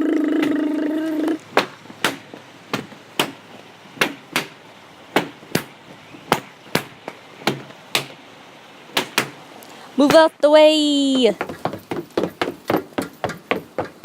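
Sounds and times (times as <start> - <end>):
sharp knocks: 1.6 - 3.4, 4.0 - 8.2, 9.0 - 9.4.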